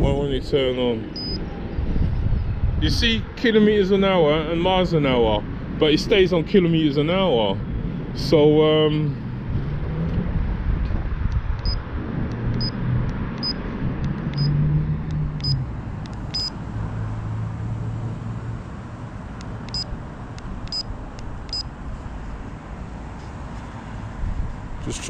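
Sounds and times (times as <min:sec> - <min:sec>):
short high electronic beeps: 0:01.2 - 0:01.4, 0:16.3 - 0:16.5.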